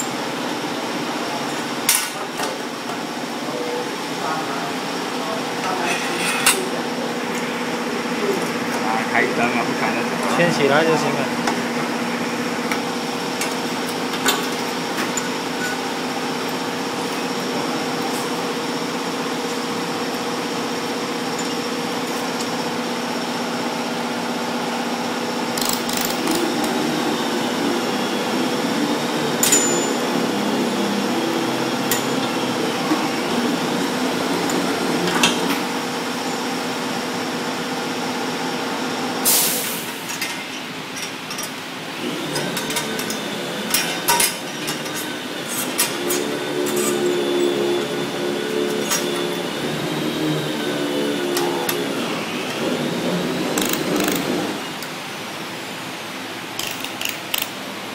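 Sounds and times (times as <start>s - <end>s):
welding machine humming: 40.9s - 55.0s.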